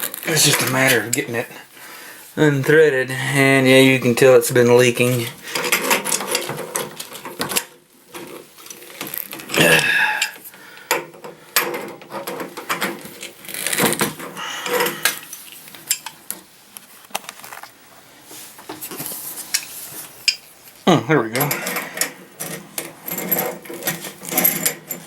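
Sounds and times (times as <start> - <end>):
metal tools clinking and scraping: 5.0 - 10.4, 21.3 - 25.0.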